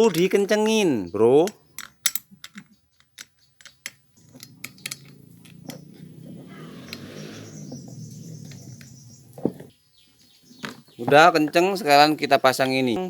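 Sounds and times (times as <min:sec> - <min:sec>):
metallic scraping and rubbing: 0:03.6 - 0:09.7.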